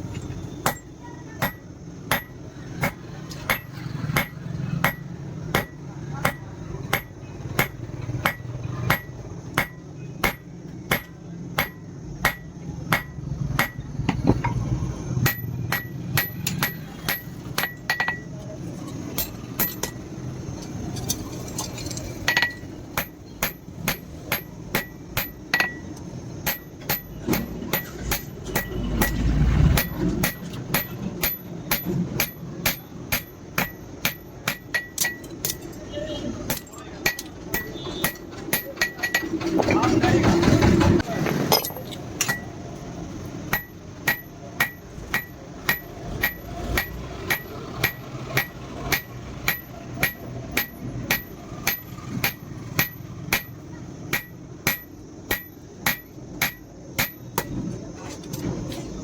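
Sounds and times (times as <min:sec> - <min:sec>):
hammer striking steel on anvil: 0:00.6 - 0:14.6, 0:15.2 - 0:18.3, 0:18.9 - 0:35.8, 0:36.4 - 0:39.3, 0:41.5 - 0:42.6, 0:43.5 - 0:57.6.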